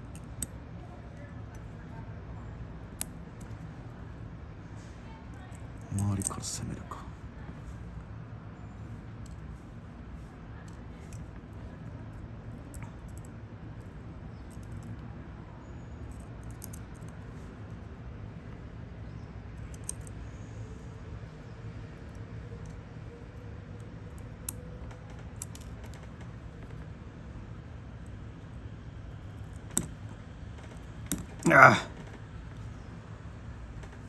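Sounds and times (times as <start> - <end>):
hand tool clicking and scraping: 19.6 - 20.1, 31.1 - 31.6.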